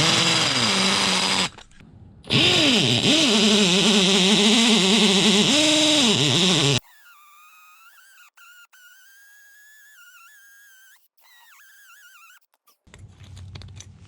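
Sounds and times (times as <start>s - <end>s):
power drill boring into concrete: 0.0s - 1.7s, 2.3s - 6.8s.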